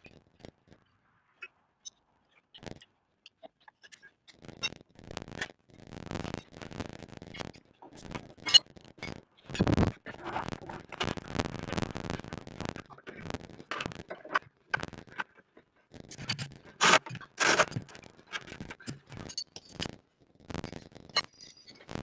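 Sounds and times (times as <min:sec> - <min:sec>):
handling scrapes and knocks: 0:16.2 - 0:19.9.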